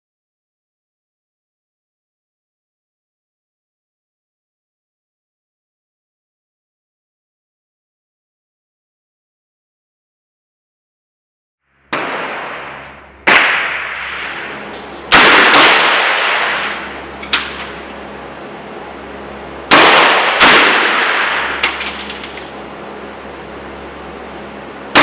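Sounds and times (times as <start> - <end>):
revolver gunshots with ringing tail: 11.9 - 18.4, 19.6 - 22.6.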